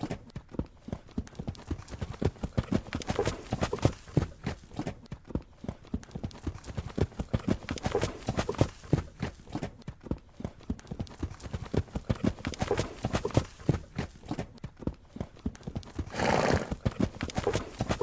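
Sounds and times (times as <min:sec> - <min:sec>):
horse hooves trotting: 0:00.0 - 0:18.0.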